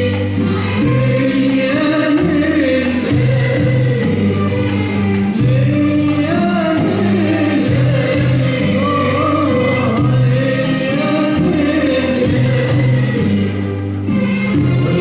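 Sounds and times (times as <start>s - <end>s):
instrumental accompaniment: 0.0s - 15.0s
voices singing together: 0.0s - 15.0s.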